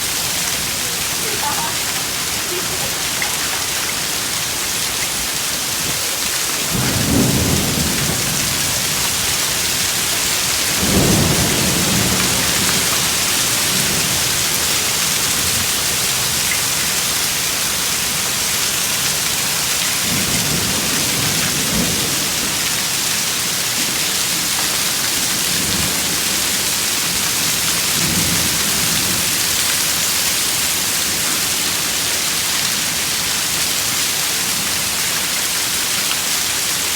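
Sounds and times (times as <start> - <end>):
heavy rain and hail: 0.0 - 36.9
thunder rolling: 6.6 - 14.4.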